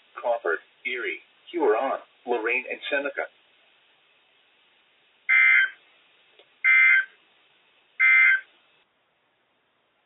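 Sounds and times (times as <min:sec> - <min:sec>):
buzzy two-tone digital squawks: 0:05.3 - 0:05.8, 0:06.6 - 0:07.1, 0:08.0 - 0:08.5.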